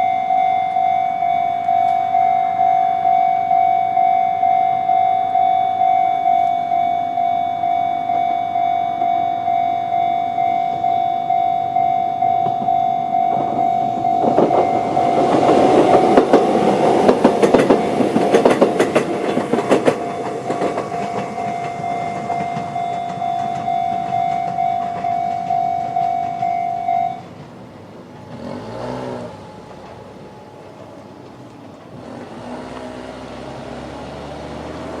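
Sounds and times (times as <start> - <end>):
level crossing bell ringing: 0.0 - 27.2
train wheels clattering: 10.4 - 35.0.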